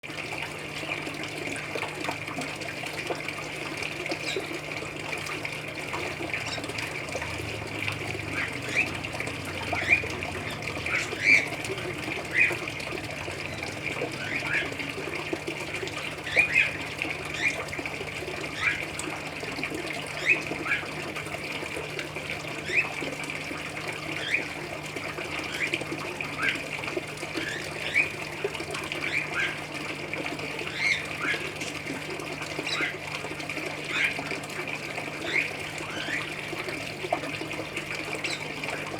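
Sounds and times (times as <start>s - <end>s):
water splashing into pond: 0.0s - 38.9s
small birds chirping: 8.2s - 14.8s, 30.6s - 31.6s, 38.2s - 38.5s.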